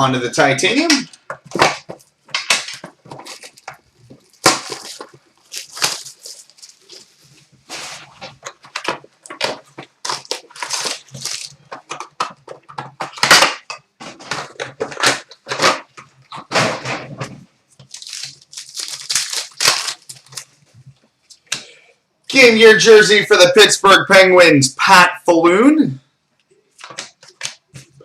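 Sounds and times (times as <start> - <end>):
wrappers tearing and crinkling: 1.8 - 20.7.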